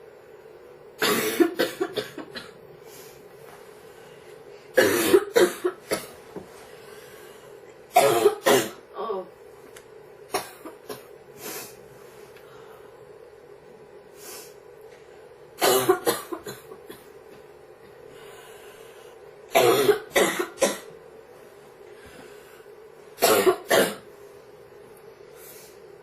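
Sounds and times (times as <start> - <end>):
girl coughing: 1.0 - 2.6, 4.8 - 6.2, 7.9 - 9.3, 10.3 - 11.1, 15.6 - 17.1, 19.5 - 20.9, 23.2 - 24.1.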